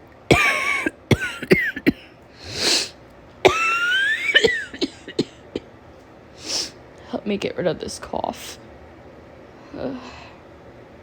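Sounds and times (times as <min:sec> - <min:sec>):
woman coughing: 0:00.3 - 0:02.1, 0:03.4 - 0:05.6
noisy breath: 0:02.3 - 0:03.0, 0:06.3 - 0:07.1.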